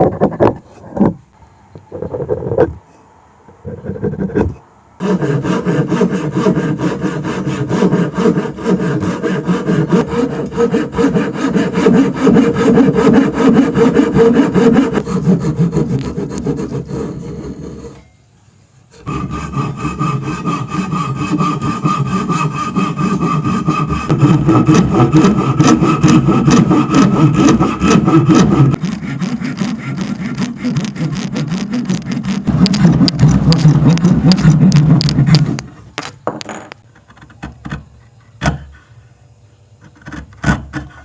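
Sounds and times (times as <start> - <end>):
saw cutting through wood: 5.0 - 18.0, 19.0 - 35.8.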